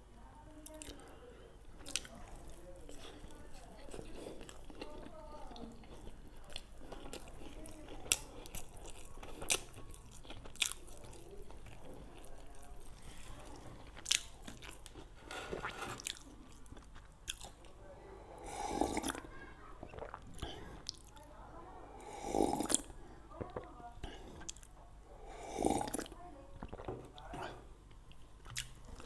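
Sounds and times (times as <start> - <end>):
chewing and biting: 3.9 - 17.7
mouth smacks: 19.8 - 21.1.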